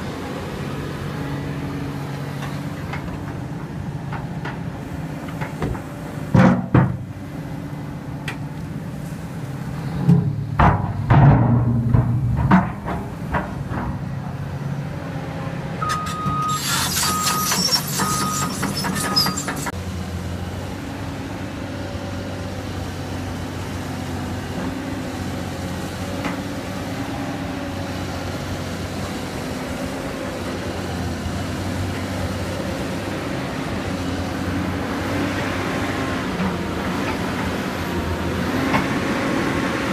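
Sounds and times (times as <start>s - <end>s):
diesel engine running: 0.0s - 39.9s
rapid metal clanking: 10.6s - 14.1s
short high beeps: 15.8s - 19.4s.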